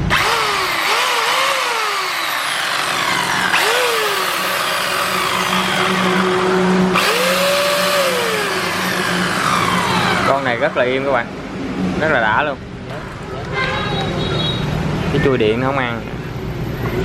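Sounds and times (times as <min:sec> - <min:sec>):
electric chainsaw spinning up: 0:00.0 - 0:10.7.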